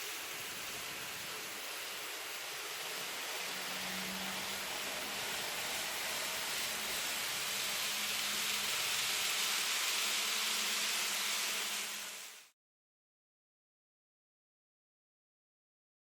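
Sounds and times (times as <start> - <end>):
model train wheels hissing on rail: 0.0 - 12.5.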